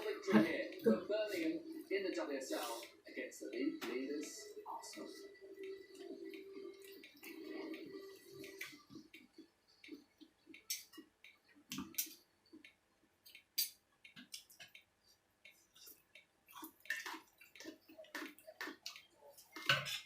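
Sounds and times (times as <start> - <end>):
chewing noises: 4.2 - 20.0
utensils clicking on dishes: 16.6 - 20.0.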